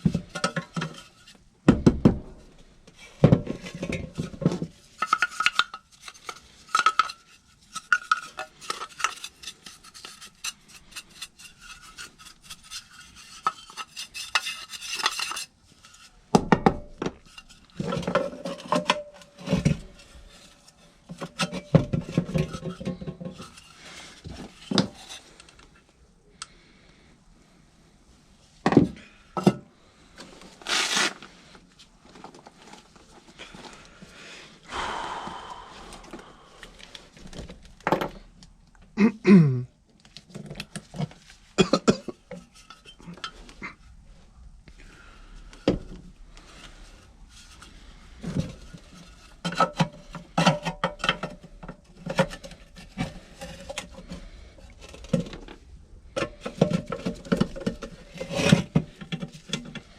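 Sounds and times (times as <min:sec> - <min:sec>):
metallic clinks and scrapes: 0:03.6 - 0:16.2.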